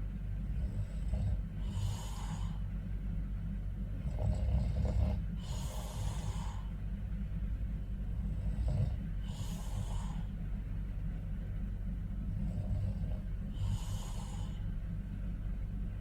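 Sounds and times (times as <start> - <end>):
steady low hum: 0.0 - 16.0
man snoring: 0.5 - 2.6, 4.0 - 6.7, 8.1 - 10.3, 12.3 - 14.7.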